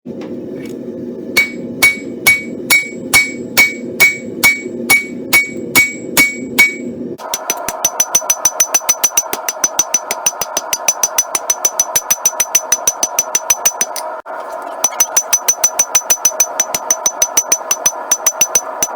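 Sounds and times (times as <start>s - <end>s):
steady low noise: 0.4s - 7.2s
hammer ringing on anvil: 1.4s - 14.0s, 15.0s - 18.9s.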